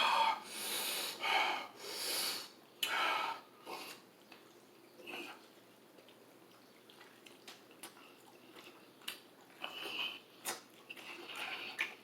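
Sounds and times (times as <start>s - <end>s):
man breathing hard and sniffing: 0.0s - 4.0s.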